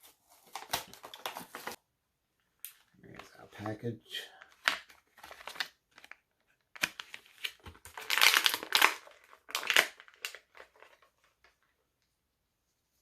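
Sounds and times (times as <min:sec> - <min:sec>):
plastic and cardboard crinkling: 0:00.0 - 0:01.8, 0:04.4 - 0:11.8.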